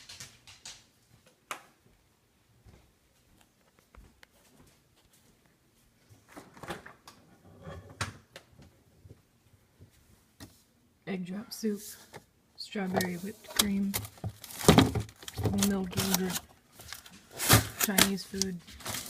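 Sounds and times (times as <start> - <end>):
rustling: 12.8 - 19.0.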